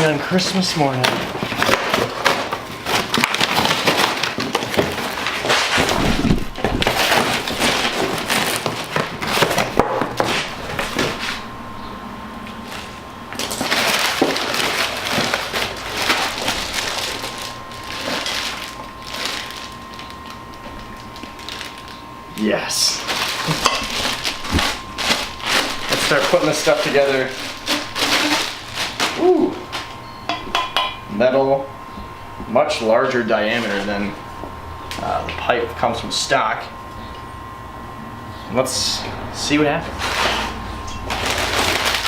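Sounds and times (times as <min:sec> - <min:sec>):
cardboard and packing crinkling: 0:00.0 - 0:11.8, 0:12.4 - 0:30.0, 0:33.1 - 0:34.2, 0:39.9 - 0:42.0
crackles and knocks: 0:00.5 - 0:22.2, 0:23.0 - 0:31.0.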